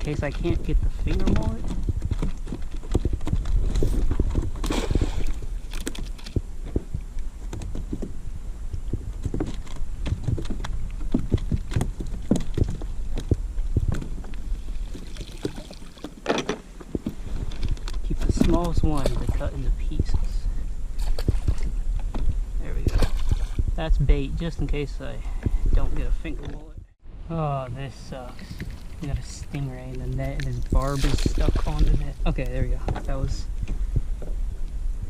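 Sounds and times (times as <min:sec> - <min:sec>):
knocks and thumps on plastic kayak: 0:00.1 - 0:08.2.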